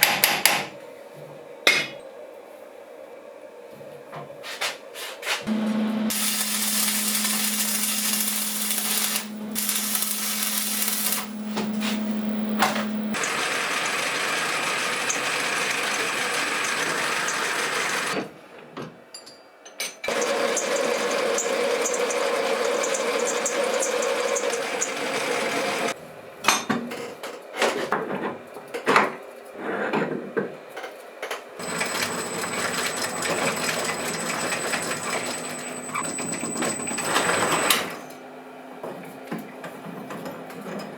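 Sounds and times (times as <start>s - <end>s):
electric motor humming: 5.5s - 16.6s.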